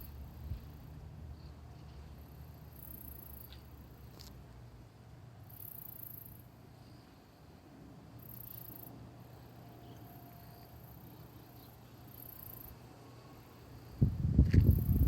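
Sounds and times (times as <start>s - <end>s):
high-pitched insect buzz: 8.2s - 9.0s, 9.8s - 12.8s
steady low rumble: 13.8s - 15.0s.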